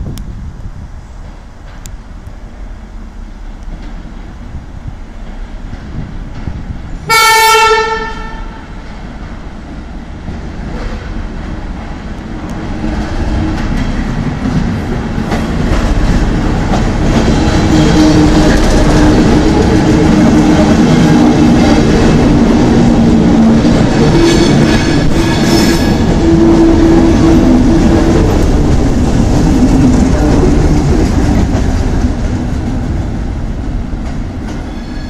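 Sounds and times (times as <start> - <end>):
train running noise and engine hum: 0.0 - 35.0
train horn blast: 7.0 - 8.7.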